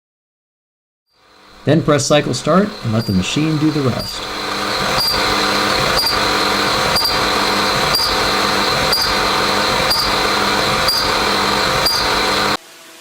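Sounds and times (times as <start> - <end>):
machine spindle whine: 1.2 - 12.6
sharp machine clicks: 1.6 - 12.6.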